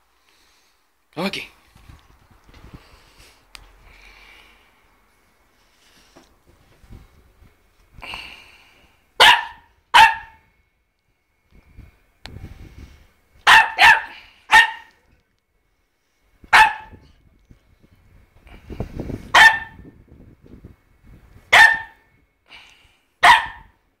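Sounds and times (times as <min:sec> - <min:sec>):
low scuffling: 0:05.5 - 0:07.9
dog barking: 0:09.2 - 0:10.5, 0:13.4 - 0:15.0, 0:16.5 - 0:17.1, 0:19.3 - 0:19.8, 0:21.5 - 0:22.1, 0:23.2 - 0:23.8.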